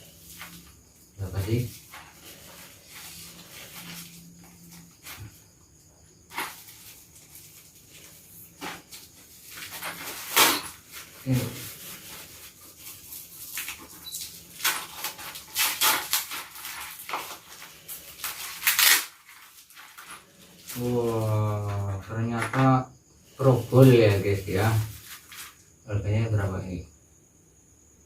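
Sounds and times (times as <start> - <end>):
packaging crinkling and tearing: 6.3 - 21.3.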